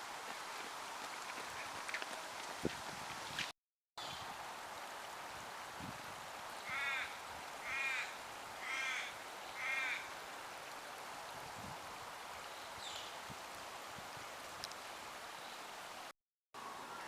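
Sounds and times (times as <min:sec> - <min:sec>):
background hiss: 0:04.0 - 0:17.0
crow cawing: 0:06.7 - 0:10.1.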